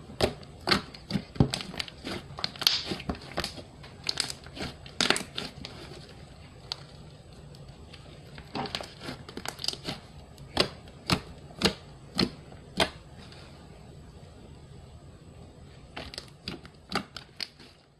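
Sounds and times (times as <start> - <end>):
slime crackling and clicking: 0.2 - 5.5
sharp slime pops: 2.5 - 4.2.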